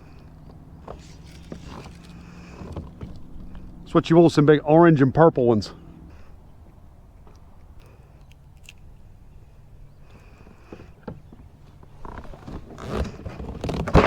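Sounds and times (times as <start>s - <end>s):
fly line scraping and rustling: 0.9s - 2.8s.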